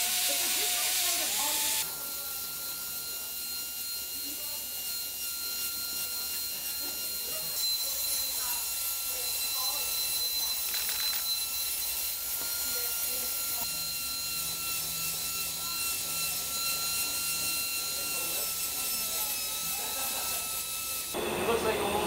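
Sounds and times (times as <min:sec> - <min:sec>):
hiss: 0:00.0 - 0:01.8
machinery high whine: 0:00.0 - 0:22.0.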